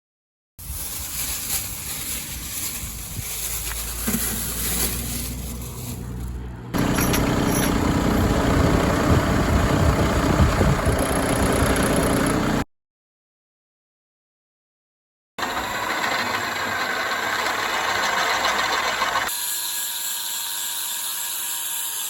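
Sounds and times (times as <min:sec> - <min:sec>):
diesel generator running: 0:01.0 - 0:12.6.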